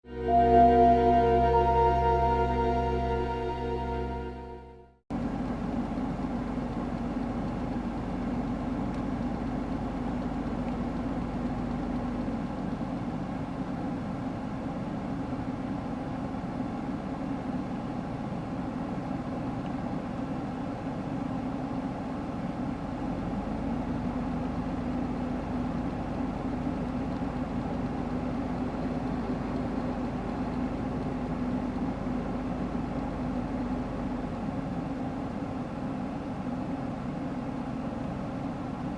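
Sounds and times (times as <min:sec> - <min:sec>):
electric train rumbling past: 0:00.1 - 0:04.7.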